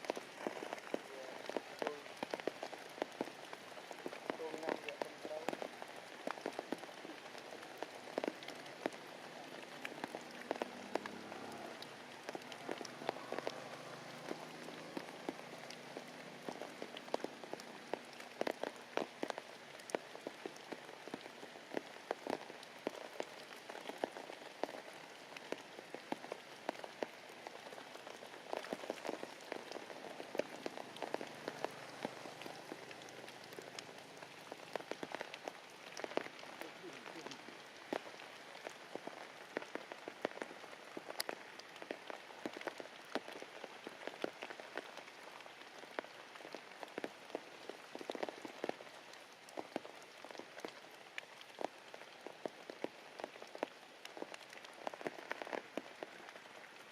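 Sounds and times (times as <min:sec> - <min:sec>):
heavy rain falling: 0:00.0 - 0:56.9
raindrops hitting a surface: 0:00.0 - 0:56.9.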